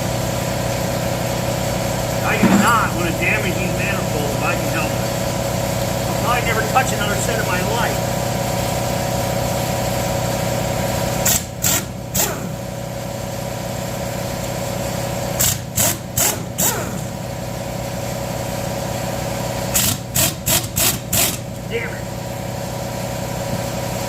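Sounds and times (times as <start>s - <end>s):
air compressor running: 0.0s - 24.0s
air impact wrench bursts: 11.2s - 12.8s, 15.3s - 17.3s, 19.6s - 21.5s.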